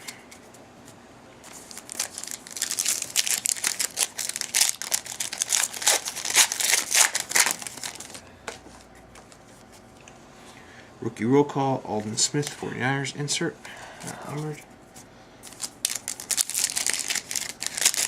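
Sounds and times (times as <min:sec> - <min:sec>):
plastic wrapper crinkling and tearing: 0:01.5 - 0:08.2, 0:15.5 - 0:18.0.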